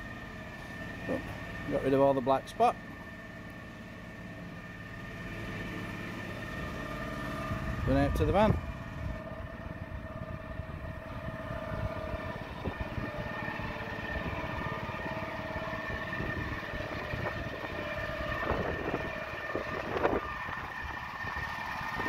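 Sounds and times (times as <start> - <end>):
engine running: 0.0 - 22.0
whine: 7.4 - 22.0.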